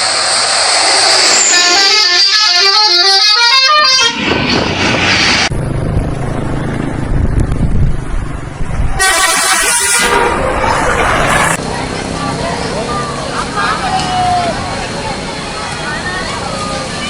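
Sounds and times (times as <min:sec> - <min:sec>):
multi-tone bus horn tune: 0:01.6 - 0:04.6, 0:08.9 - 0:11.6
low rumble: 0:05.5 - 0:11.6.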